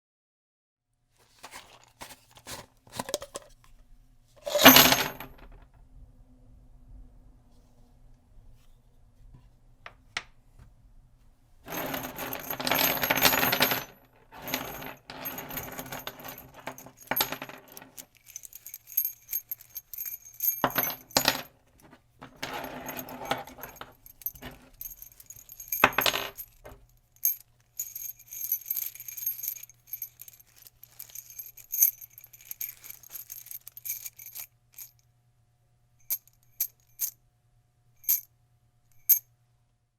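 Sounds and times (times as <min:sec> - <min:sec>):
nails clinking and rattling: 0:11.7 - 0:21.5, 0:22.3 - 0:34.9.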